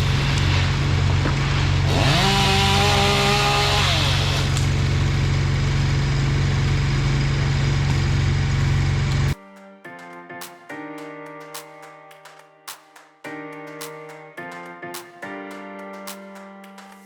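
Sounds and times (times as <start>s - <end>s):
chainsaw engine revving: 1.1s - 6.7s.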